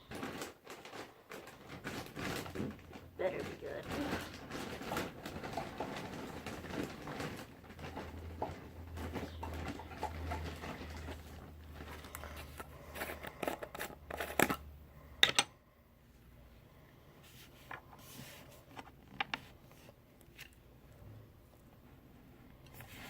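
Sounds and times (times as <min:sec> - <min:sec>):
plastic packaging crinkling: 0:00.0 - 0:14.6.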